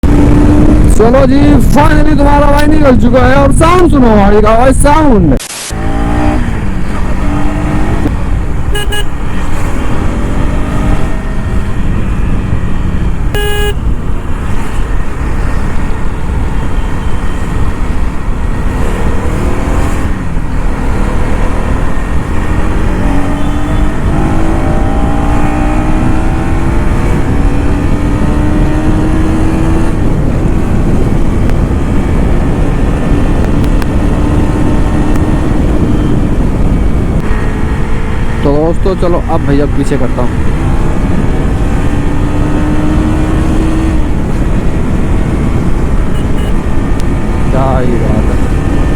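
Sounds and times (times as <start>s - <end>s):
motorcycle engine shifting gears: 5.7s - 48.9s
motorcycle horn: 8.7s - 9.2s, 13.3s - 14.0s, 46.1s - 46.6s.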